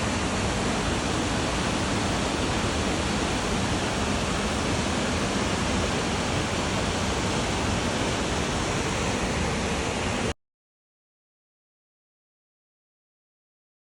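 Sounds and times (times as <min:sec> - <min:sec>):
waterfall roar: 0:00.0 - 0:10.4.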